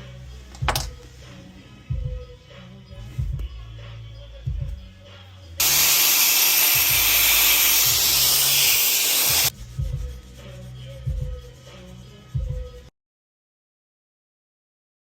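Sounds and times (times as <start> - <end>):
background music with low beat: 0.0 - 12.9
hissing spray: 5.6 - 9.5.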